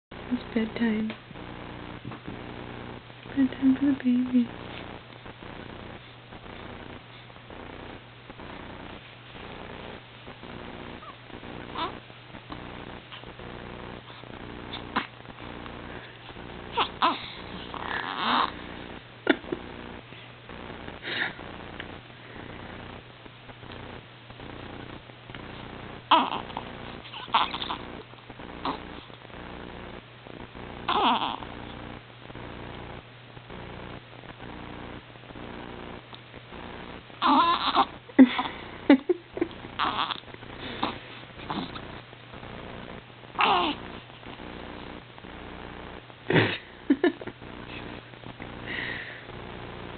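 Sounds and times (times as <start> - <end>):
steady low hum: 0.1 - 49.9
baby grunting and fussing: 11.0 - 12.0, 14.7 - 15.2, 16.7 - 18.7, 26.1 - 27.8, 28.6 - 29.1, 30.8 - 31.5, 37.2 - 38.5, 39.8 - 41.9, 43.4 - 44.0
baby squeaking and huffing: 18.0 - 18.5, 37.2 - 37.9.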